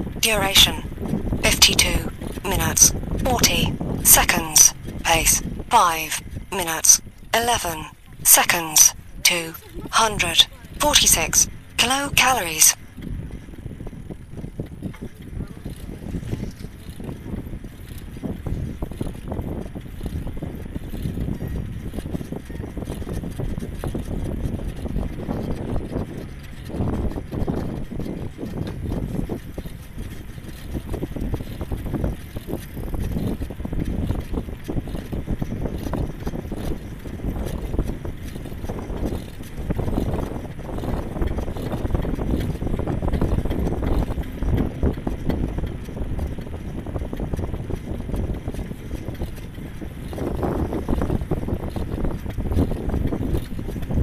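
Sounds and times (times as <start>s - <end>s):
wind buffeting microphone: 0.0s - 0.2s, 0.8s - 1.4s, 2.0s - 4.1s, 4.7s - 7.3s, 12.8s - 54.0s.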